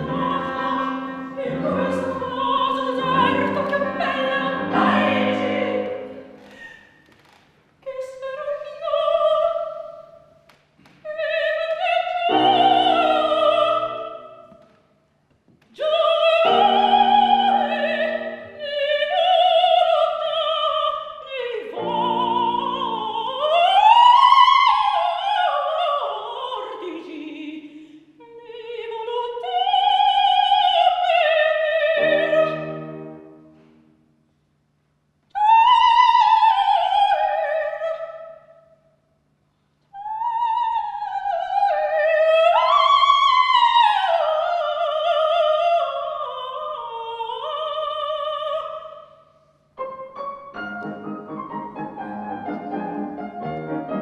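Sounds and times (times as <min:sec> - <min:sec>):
operatic singing high voice: 0:00.0 - 0:06.4, 0:11.1 - 0:14.3.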